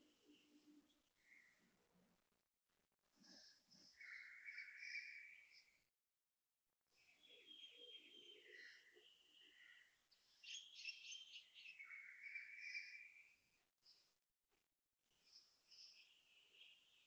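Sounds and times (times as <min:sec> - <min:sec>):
birds chirping and warbling: 0:03.2 - 0:05.8, 0:07.0 - 0:14.0, 0:15.2 - 0:17.0.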